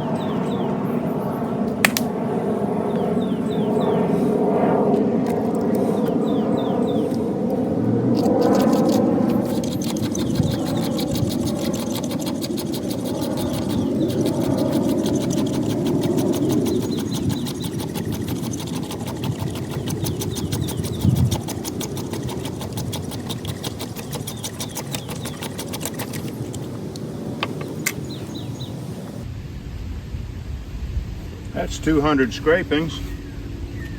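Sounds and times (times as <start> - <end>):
sharp clicks: 1.7 - 2.1, 8.2 - 28.0
knife blade scraping wood: 8.2 - 26.7.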